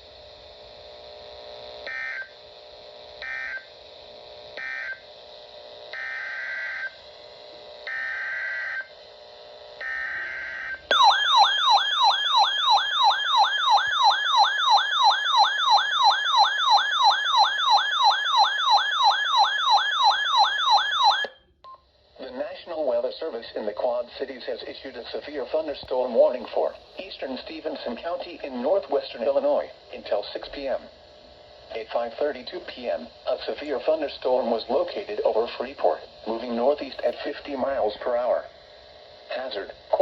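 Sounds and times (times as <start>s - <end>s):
warbling alert tone: 10.9s - 18.8s.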